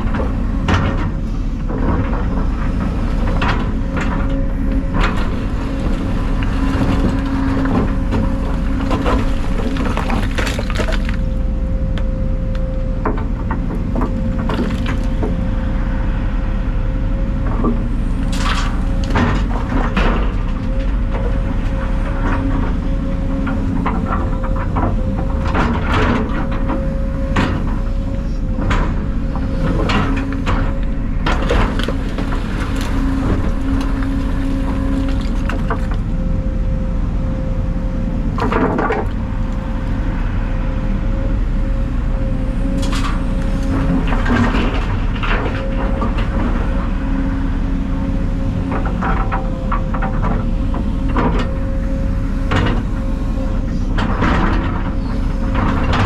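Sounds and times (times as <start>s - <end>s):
excavator engine running: 0.0s - 56.0s
debris knocking and scraping: 2.0s - 11.5s, 14.3s - 15.5s, 29.6s - 36.2s, 38.4s - 40.0s.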